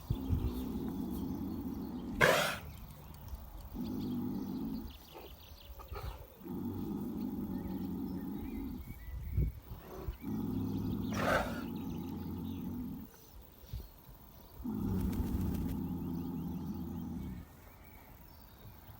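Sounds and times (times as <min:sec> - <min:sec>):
pony snoring: 0:00.0 - 0:02.8, 0:03.7 - 0:13.2, 0:14.6 - 0:17.5
pony blowing breath: 0:02.2 - 0:02.7, 0:11.1 - 0:11.7.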